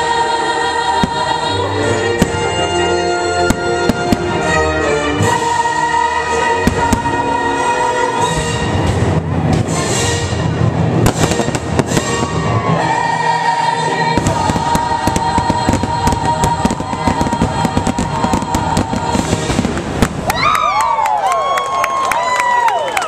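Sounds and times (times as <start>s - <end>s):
music holding long note: 0.0s - 20.0s
fireworks bangs and crackles: 1.0s - 1.5s, 2.1s - 2.6s, 3.4s - 4.6s, 6.4s - 7.3s, 8.3s - 13.0s, 14.0s - 21.1s.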